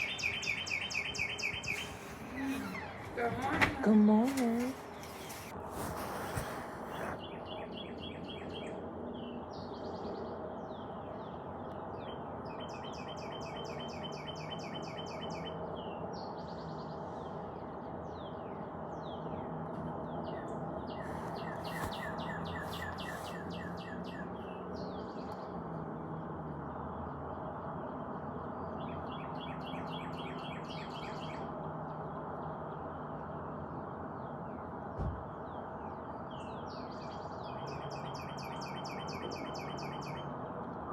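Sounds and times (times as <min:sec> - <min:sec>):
bird chirps: 0:00.0 - 0:03.6, 0:12.0 - 0:17.3, 0:20.1 - 0:25.4, 0:36.3 - 0:40.3
songbirds trilling: 0:00.0 - 0:40.9.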